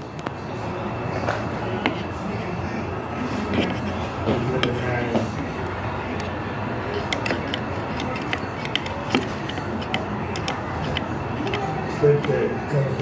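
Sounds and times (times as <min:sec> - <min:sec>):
screwdriver and plastic clicks: 0:07.0 - 0:12.4.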